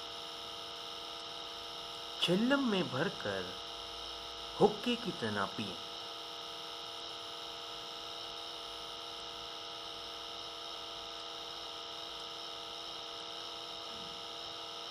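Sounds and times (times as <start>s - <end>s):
electrical hum with hiss: 0.0s - 14.9s.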